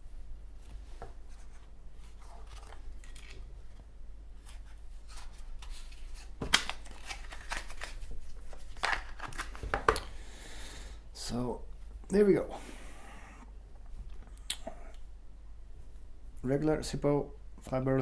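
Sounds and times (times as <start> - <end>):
packaging rustling: 5.0 - 10.0.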